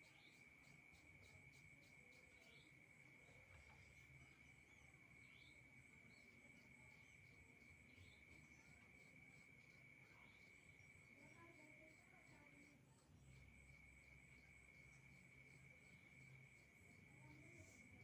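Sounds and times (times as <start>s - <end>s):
high-pitched cricket trill: 0.0s - 18.0s.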